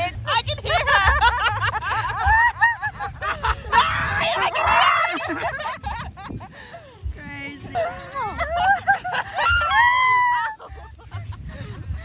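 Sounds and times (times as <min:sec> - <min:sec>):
young women laughing and shrieking: 0:00.2 - 0:07.1, 0:07.7 - 0:12.0
woman screaming: 0:09.4 - 0:10.6.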